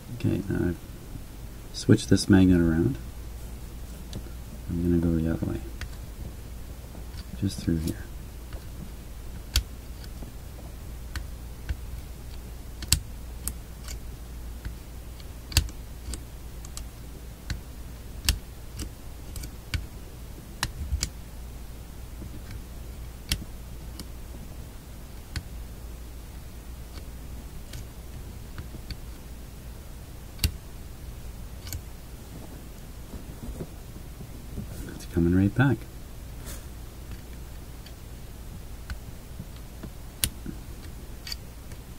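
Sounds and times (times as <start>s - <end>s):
steady low hum: 0.0s - 41.9s.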